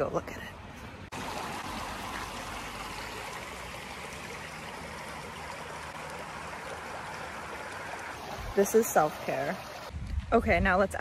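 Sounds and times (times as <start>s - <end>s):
creek water flowing: 0.8s - 10.0s.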